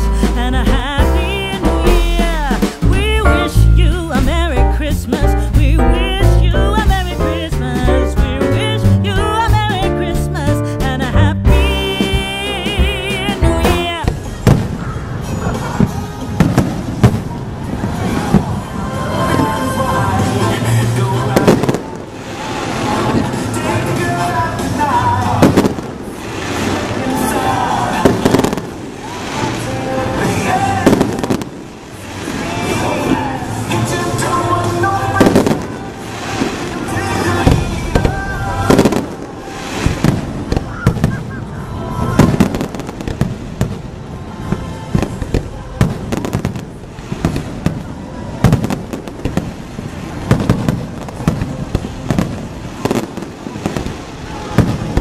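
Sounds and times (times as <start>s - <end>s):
music: 0.0s - 16.8s, 18.8s - 21.8s, 22.6s - 25.6s, 29.5s - 31.4s, 32.3s - 40.1s
fireworks bangs with echo: 11.6s - 18.6s, 21.3s - 29.6s, 30.2s - 33.5s, 35.2s - 55.0s.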